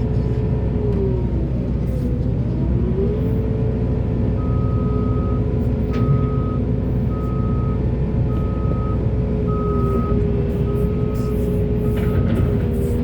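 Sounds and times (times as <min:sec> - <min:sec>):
diesel engine running: 0:00.0 - 0:13.0
reversing alarm beeping: 0:04.4 - 0:13.0.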